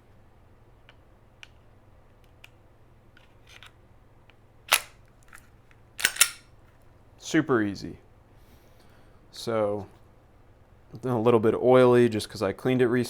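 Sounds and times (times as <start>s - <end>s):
light clicks of gun parts: 3.2s - 6.8s
sharp metallic snap: 4.7s - 5.0s, 6.0s - 6.5s.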